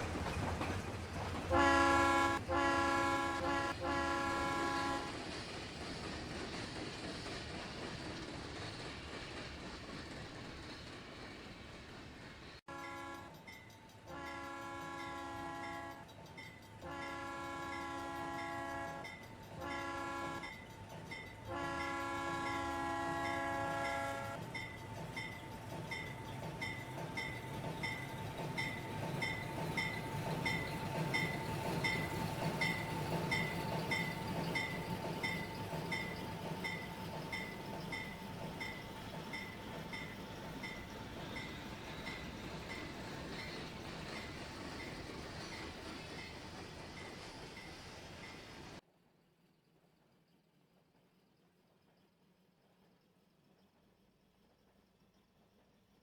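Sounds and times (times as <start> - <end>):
train low rumble: 0.0 - 48.8
steam locomotive whistle: 1.5 - 5.2, 14.1 - 16.0, 16.8 - 20.5, 21.5 - 24.4.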